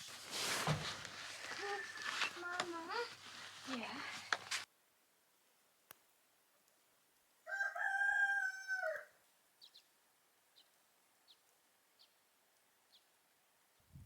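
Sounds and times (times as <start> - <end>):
rooster crowing: 7.4 - 9.2.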